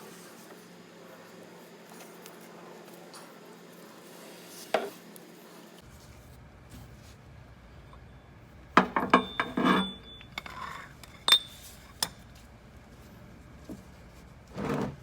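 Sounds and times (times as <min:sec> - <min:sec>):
metal tools clinking: 0:09.0 - 0:11.7.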